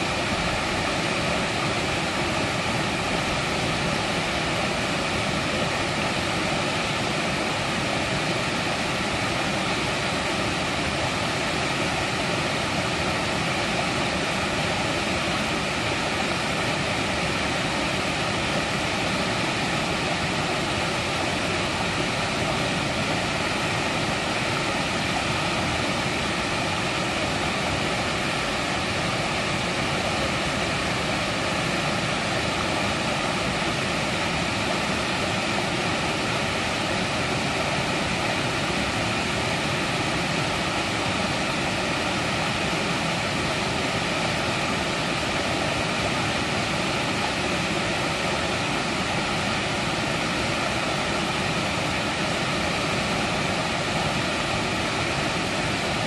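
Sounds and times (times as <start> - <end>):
stream rushing over rocks: 0.0 - 56.0.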